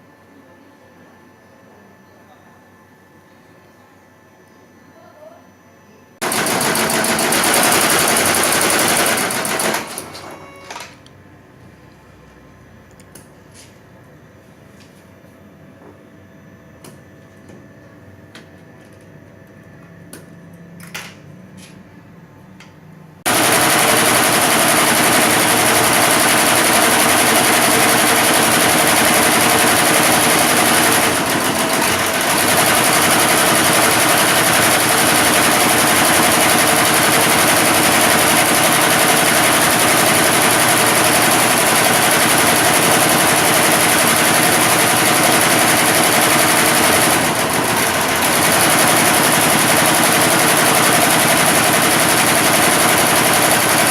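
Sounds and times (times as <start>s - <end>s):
embroidery machine stitching: 6.2s - 10.8s, 23.3s - 53.9s.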